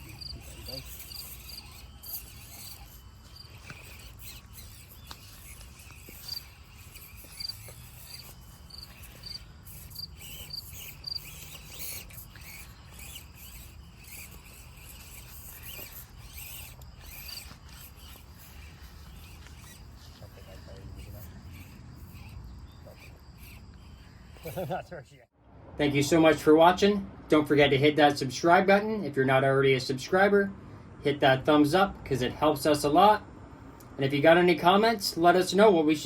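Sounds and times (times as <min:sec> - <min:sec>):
crickets chirping: 0:00.0 - 0:25.2.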